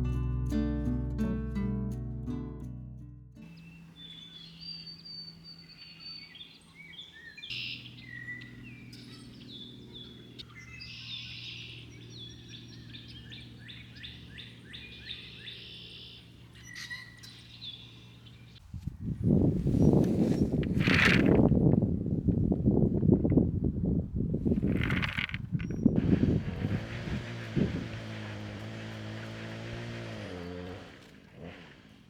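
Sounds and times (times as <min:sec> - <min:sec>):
songbirds chirping and trilling: 0:03.4 - 0:18.6, 0:24.4 - 0:30.7.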